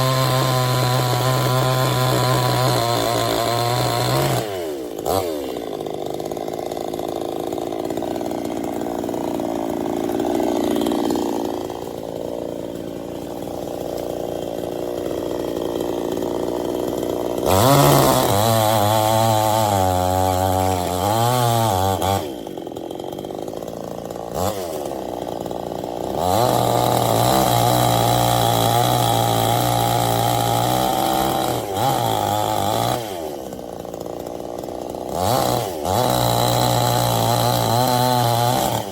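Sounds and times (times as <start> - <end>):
chainsaw running and revving: 0.0 - 38.9.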